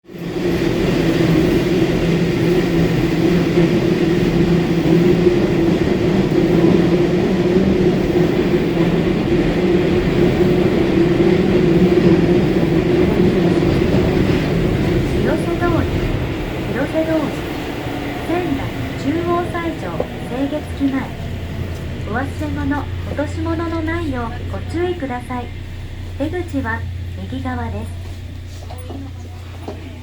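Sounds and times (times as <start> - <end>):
train wheels rumbling on rail: 0.0 - 30.0
constant low hum: 18.0 - 30.0.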